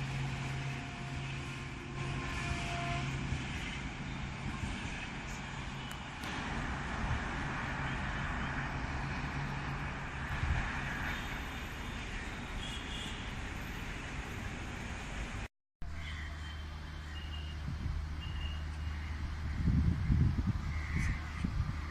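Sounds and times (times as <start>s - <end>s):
train wheels rumbling on rail: 0.0s - 12.6s
low locomotive hum: 0.0s - 21.9s.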